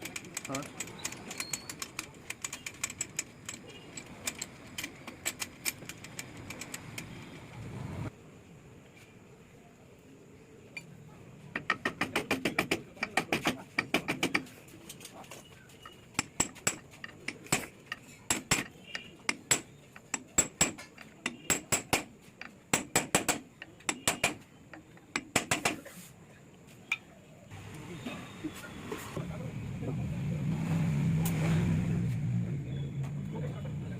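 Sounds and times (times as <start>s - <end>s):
metallic clicks of tools on engine: 0.0s - 7.4s, 11.6s - 15.2s, 15.8s - 25.8s.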